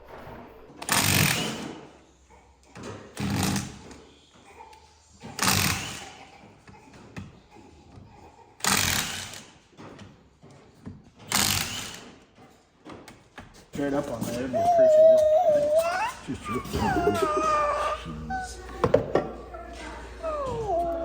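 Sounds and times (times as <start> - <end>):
power tool bursts: 11.3 - 12.0.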